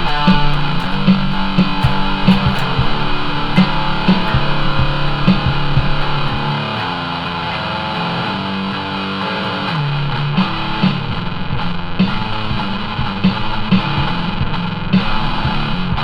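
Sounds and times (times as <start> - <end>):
sharp percussive hits: 0.0 - 7.0
distorted electric guitar riff: 0.0 - 16.0.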